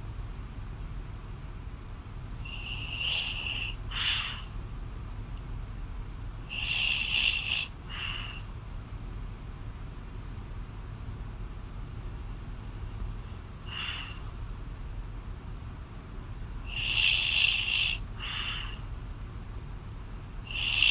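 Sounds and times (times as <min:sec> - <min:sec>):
low line hum: 0:00.0 - 0:20.9
person snoring: 0:02.5 - 0:04.4, 0:06.5 - 0:08.4, 0:16.7 - 0:18.8, 0:20.5 - 0:20.9.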